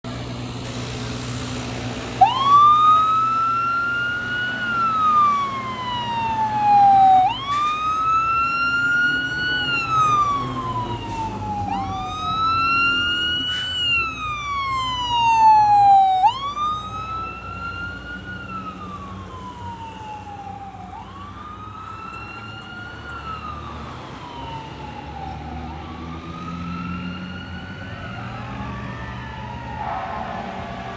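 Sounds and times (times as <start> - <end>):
truck engine hum: 0.0 - 30.9
fire engine siren wailing: 0.1 - 30.9.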